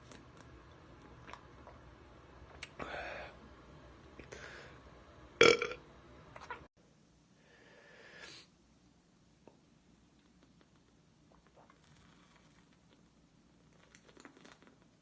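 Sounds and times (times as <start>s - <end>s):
man belching loudly: 5.4s - 5.8s.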